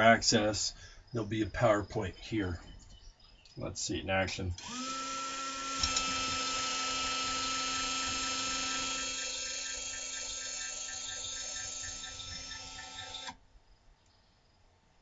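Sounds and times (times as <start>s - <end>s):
electric motor whining: 4.6s - 13.4s.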